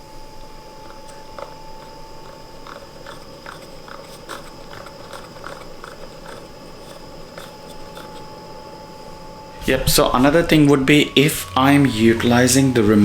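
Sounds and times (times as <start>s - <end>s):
cooling fan whine: 0.0s - 13.0s.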